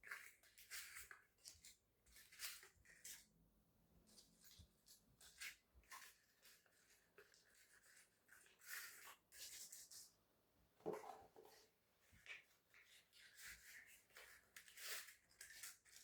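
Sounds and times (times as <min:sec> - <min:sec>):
soft rustles and scrapes: 0:04.0 - 0:10.2, 0:10.8 - 0:16.0.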